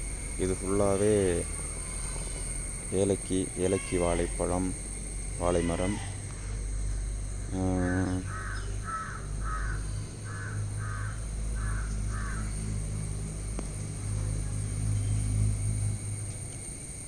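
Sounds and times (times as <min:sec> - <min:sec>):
crow cawing: 0:03.6 - 0:04.5, 0:05.4 - 0:06.6, 0:07.5 - 0:12.8.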